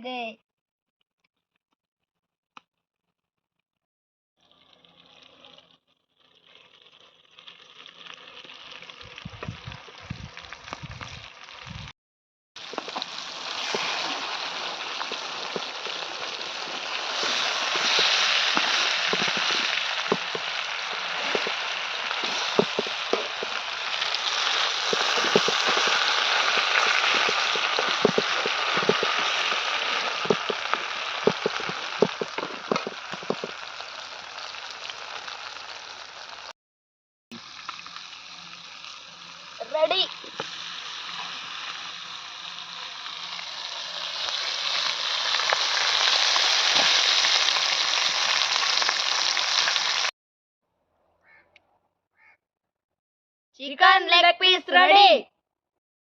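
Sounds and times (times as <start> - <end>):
chicken frying in hot oil: 4.4 - 11.9, 12.6 - 36.5, 37.3 - 50.1.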